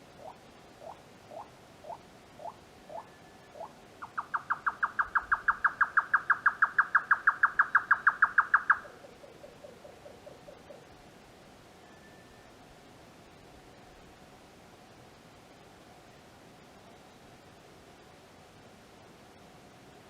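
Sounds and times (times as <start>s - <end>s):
nightjar calling: 0.2s - 10.9s.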